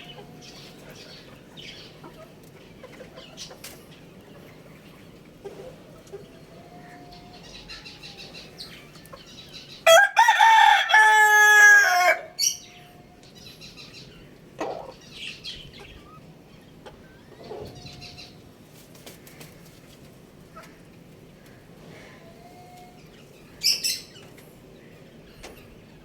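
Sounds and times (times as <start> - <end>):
small birds chirping: 0.0 - 9.9, 12.3 - 26.0
rooster crowing: 9.8 - 13.1.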